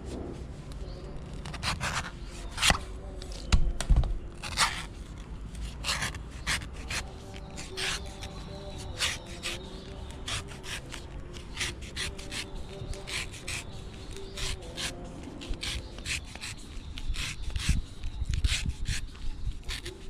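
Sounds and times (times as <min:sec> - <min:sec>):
knife swishing through coconut husk: 0:05.6 - 0:20.0.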